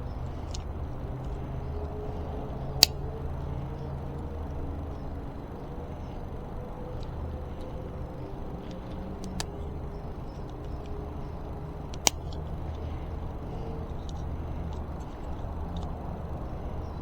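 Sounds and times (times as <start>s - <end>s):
low background hum: 0.0s - 17.0s
hand tools clicking and tapping: 0.1s - 16.5s
sharp click: 2.8s - 3.5s, 8.6s - 9.7s, 11.9s - 16.0s.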